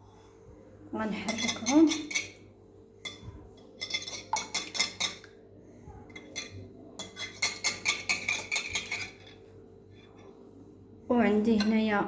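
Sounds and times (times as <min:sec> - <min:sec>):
eggs beaten in a bowl: 0:01.1 - 0:05.4, 0:06.0 - 0:09.4.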